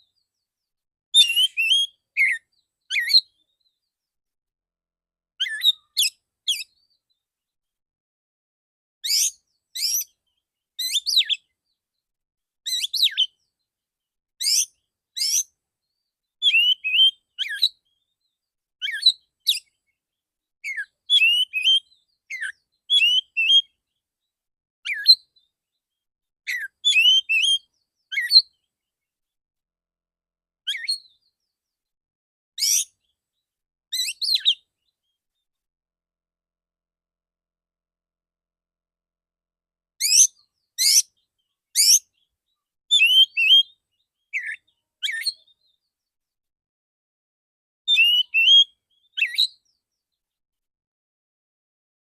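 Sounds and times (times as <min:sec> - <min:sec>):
bird whistled song: 0:01.2 - 0:03.9, 0:05.4 - 0:07.1, 0:09.0 - 0:10.2, 0:10.8 - 0:11.5, 0:12.6 - 0:13.6, 0:14.4 - 0:18.2, 0:18.8 - 0:20.0, 0:20.6 - 0:23.8, 0:24.8 - 0:25.5, 0:26.5 - 0:28.7, 0:30.7 - 0:31.5, 0:32.6 - 0:33.1, 0:33.9 - 0:35.0, 0:40.0 - 0:42.3, 0:42.9 - 0:45.9, 0:47.9 - 0:50.1.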